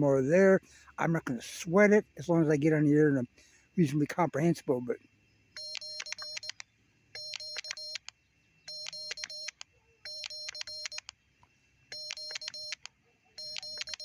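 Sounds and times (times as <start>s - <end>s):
morse code beeps: 5.6s - 6.6s, 7.2s - 8.1s, 8.7s - 11.1s, 11.9s - 14.0s.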